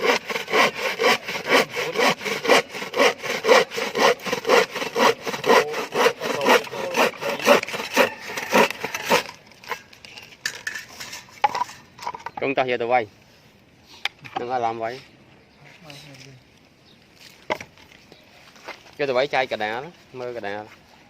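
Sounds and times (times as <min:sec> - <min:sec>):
handsaw cutting wood: 0:00.0 - 0:09.4.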